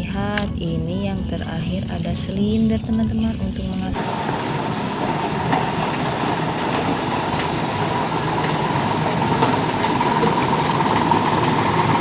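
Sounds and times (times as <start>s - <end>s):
small motor whirring: 1.0s - 4.0s.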